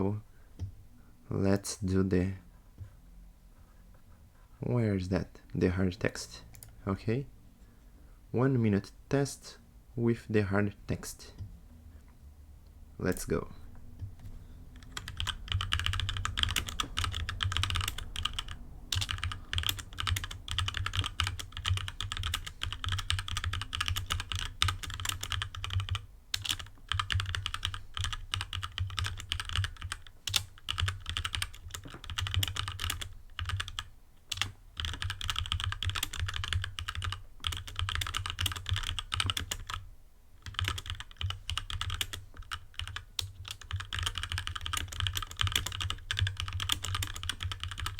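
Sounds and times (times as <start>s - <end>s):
mechanical keyboard typing: 14.8s - 39.8s, 40.4s - 47.9s.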